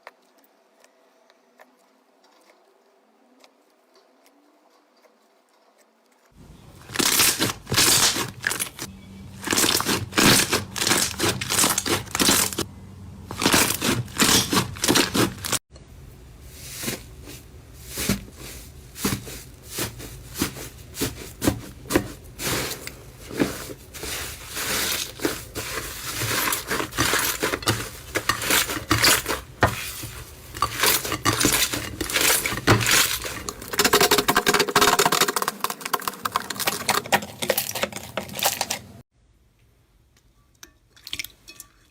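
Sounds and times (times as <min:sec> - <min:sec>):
slime squished crackling: 0:06.8 - 0:12.6.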